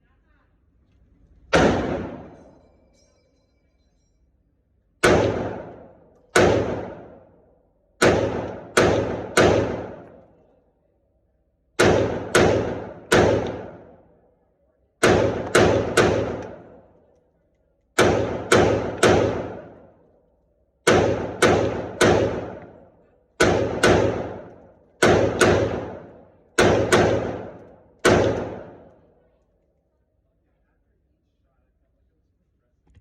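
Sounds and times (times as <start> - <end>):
gunshots: 1.5 - 2.5, 5.0 - 7.3, 8.0 - 10.2, 11.8 - 14.0, 15.0 - 16.9, 18.0 - 20.0, 20.8 - 29.0.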